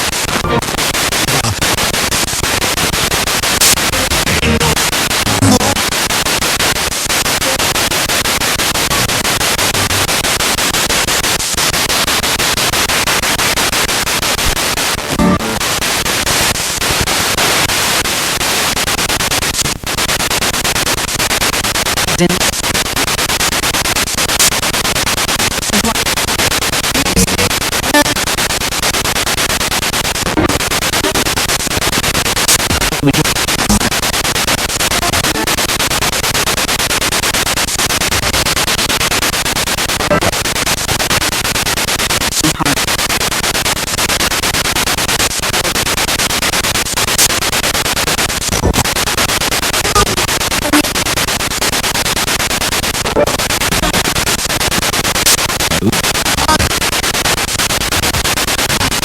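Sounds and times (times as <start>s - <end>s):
fragments of radio broadcast: 0.0s - 59.0s
radio static hiss: 0.0s - 59.0s
radio clicks: 3.6s - 5.8s, 53.1s - 56.7s.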